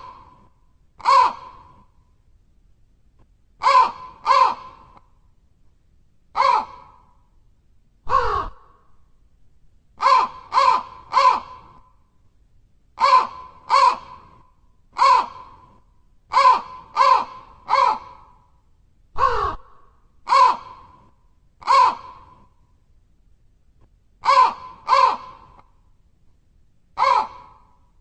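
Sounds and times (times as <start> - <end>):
crow cawing: 1.0 - 1.8, 3.6 - 5.0, 6.4 - 7.1, 8.1 - 8.9, 10.0 - 11.9, 13.0 - 14.4, 15.0 - 15.7, 16.3 - 18.5, 19.2 - 21.0, 21.6 - 22.4, 24.2 - 25.7, 27.0 - 27.8.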